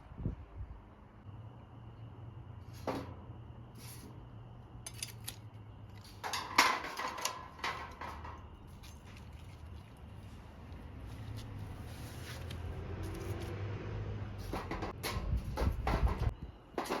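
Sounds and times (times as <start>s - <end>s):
metal gear clinking and clattering: 4.8s - 5.4s.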